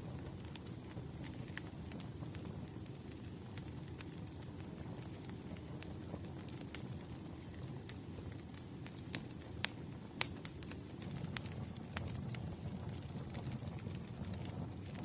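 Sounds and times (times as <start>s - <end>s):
low rumble of fire: 0.0s - 15.0s
wood fire crackling and popping: 0.0s - 15.0s.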